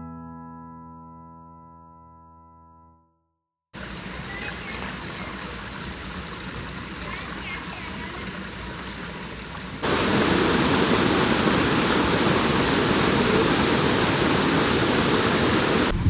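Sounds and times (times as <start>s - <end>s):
water rushing: 3.8s - 16.0s.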